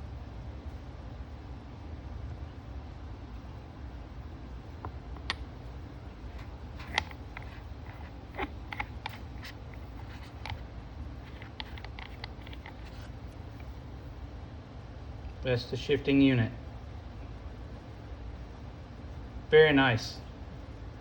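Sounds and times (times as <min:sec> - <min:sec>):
steady low hum: 0:00.0 - 0:21.0
light clicks and taps of handling: 0:06.3 - 0:10.6, 0:11.2 - 0:13.8.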